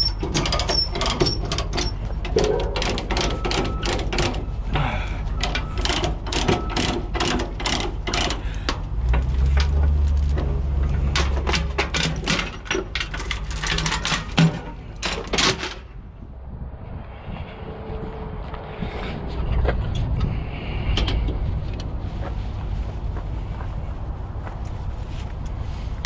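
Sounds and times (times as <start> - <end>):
low engine-like rumble: 0.0 - 26.0
rapid mechanical clicking: 5.4 - 8.9.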